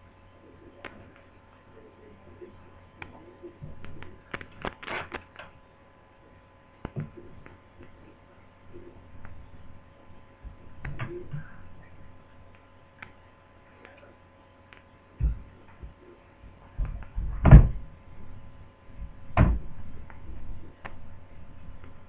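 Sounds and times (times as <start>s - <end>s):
heavy thumps: 15.2s - 18.3s, 18.9s - 20.5s.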